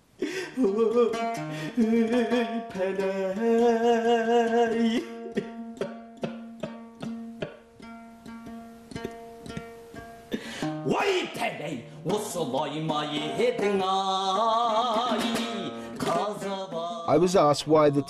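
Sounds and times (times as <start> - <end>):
person singing with vibrato: 0.2 - 7.7, 10.3 - 18.0
strummed lute: 0.2 - 18.0.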